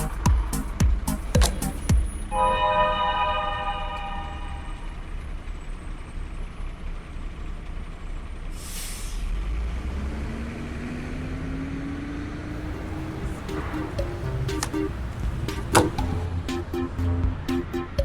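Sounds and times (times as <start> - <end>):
large vehicle engine rumbling: 4.0 - 11.2, 12.5 - 18.0
sharp hiss of air: 8.5 - 9.3.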